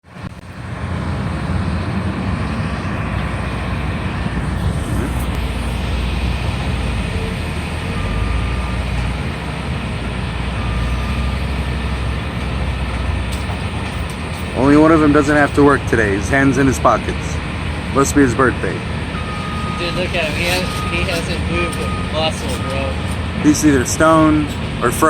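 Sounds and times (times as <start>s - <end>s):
broad noise: 0.0s - 25.0s
engine rumbling: 0.0s - 25.0s.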